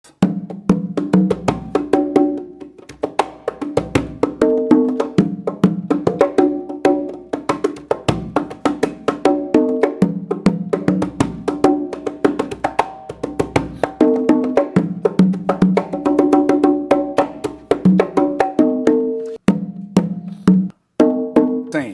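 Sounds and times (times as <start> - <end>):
conga drums playing: 0.1 - 21.9.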